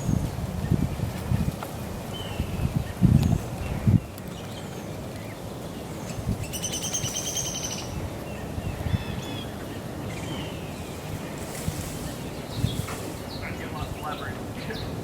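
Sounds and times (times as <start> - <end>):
low wind rumble: 0.0 - 15.0
bird chirps: 4.0 - 11.0
bird trilling: 6.0 - 8.0.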